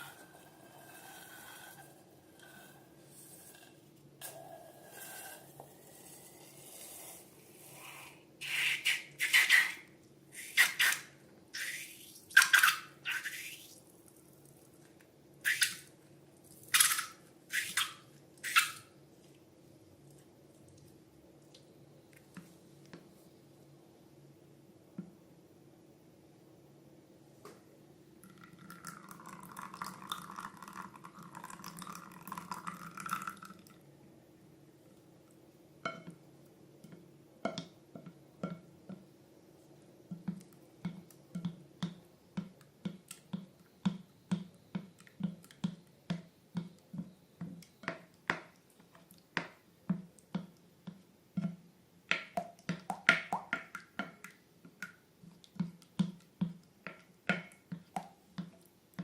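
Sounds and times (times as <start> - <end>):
soft pouring or rustling noise: 13.1 - 15.1.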